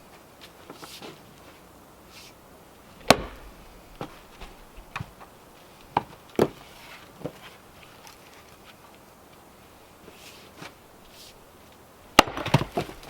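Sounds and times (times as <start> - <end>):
knocks and thumps on timber: 3.0 - 5.3, 6.0 - 6.6, 12.2 - 13.0.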